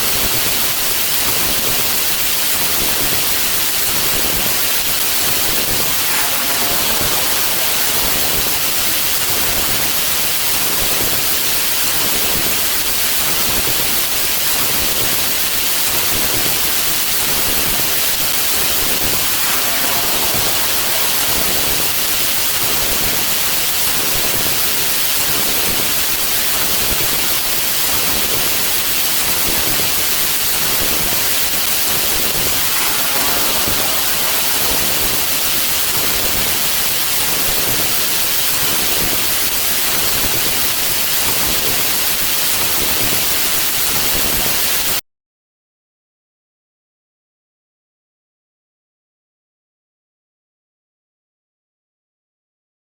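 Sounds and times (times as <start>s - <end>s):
loud static hiss: 0.0s - 11.9s, 16.6s - 43.8s
faint arching tones: 4.7s - 9.7s, 18.4s - 23.7s, 31.3s - 36.9s.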